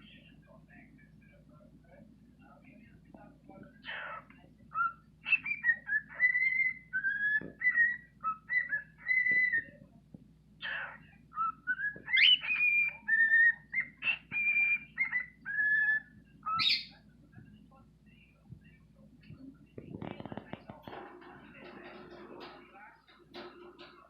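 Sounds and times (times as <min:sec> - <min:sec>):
cockatiel whistling: 0:04.8 - 0:09.6, 0:11.4 - 0:16.9.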